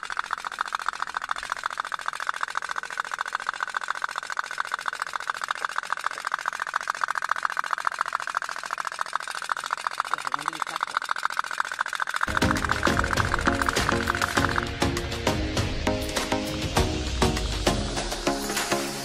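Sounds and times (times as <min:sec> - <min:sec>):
toy steam boat popping: 0:00.0 - 0:15.1.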